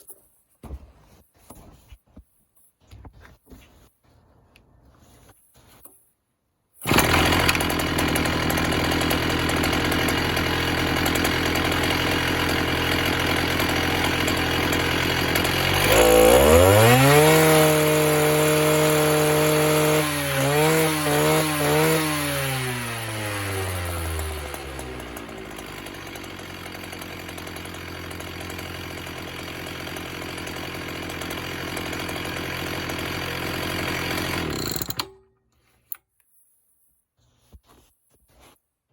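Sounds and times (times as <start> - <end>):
cut-off saw engine revving: 6.8 - 35.1.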